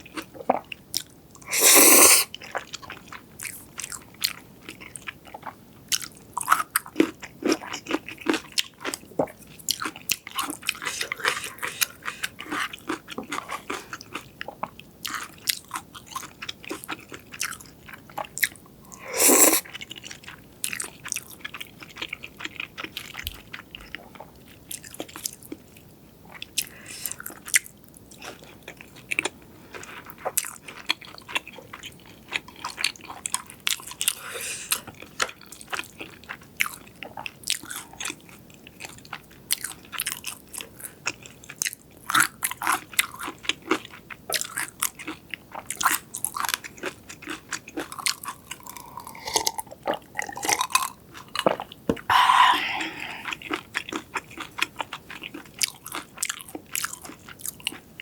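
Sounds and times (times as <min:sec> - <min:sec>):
person biting and chewing food: 0:01.4 - 0:02.3, 0:47.9 - 0:53.6.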